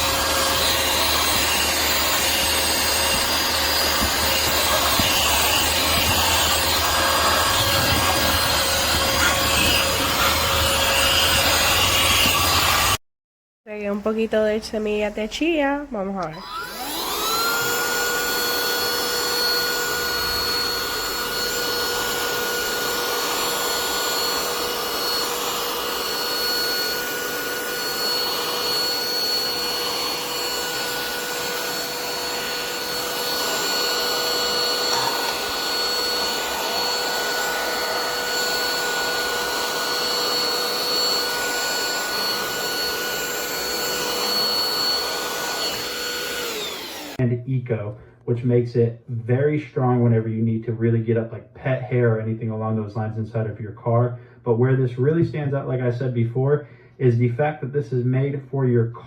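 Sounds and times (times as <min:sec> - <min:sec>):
handheld vacuum cleaner whining: 0:00.0 - 0:13.0, 0:16.2 - 0:47.2.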